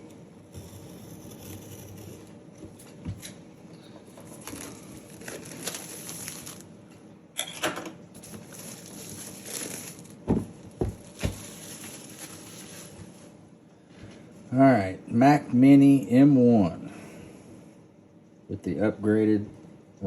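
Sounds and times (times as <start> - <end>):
cardboard packaging rustling: 4.2 - 6.7, 8.2 - 13.2.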